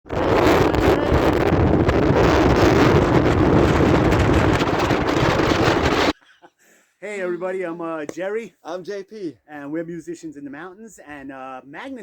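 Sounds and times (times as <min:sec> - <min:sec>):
storm-force wind on microphone: 0:00.0 - 0:06.2.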